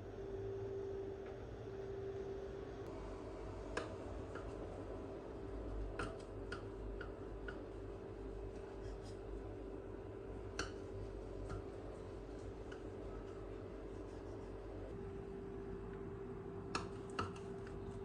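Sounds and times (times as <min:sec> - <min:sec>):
steady low hum: 0:00.0 - 0:18.0
light irregular clicks and taps: 0:10.5 - 0:11.9.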